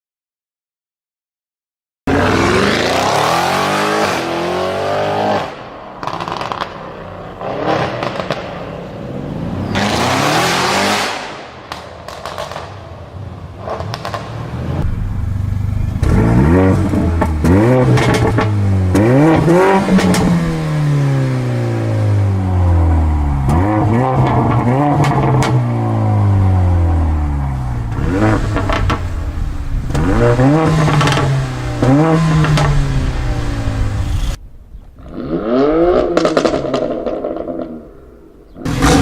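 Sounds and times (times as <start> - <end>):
car engine revving: 2.1 - 11.6, 13.6 - 34.4, 35.0 - 39.0
exhaust crackles and pops: 6.0 - 8.7, 11.6 - 13.0, 13.6 - 20.5, 27.4 - 32.9, 33.7 - 38.0.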